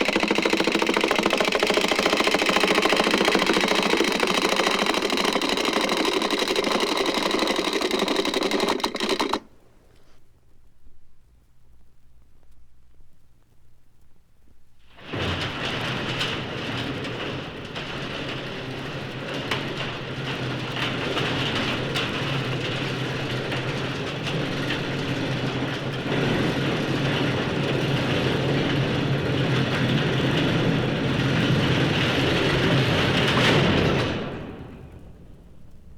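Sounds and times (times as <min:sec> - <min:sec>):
machinery clattering: 0:00.0 - 0:09.5.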